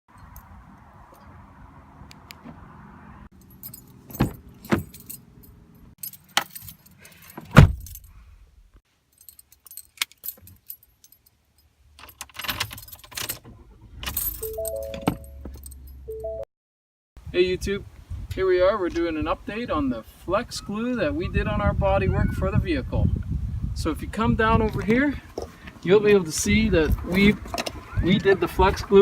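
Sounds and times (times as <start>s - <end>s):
keys jangling: 3.4s - 8.1s, 9.1s - 13.4s, 14.0s - 16.0s
short beeping tones: 14.4s - 15.4s, 16.1s - 16.5s.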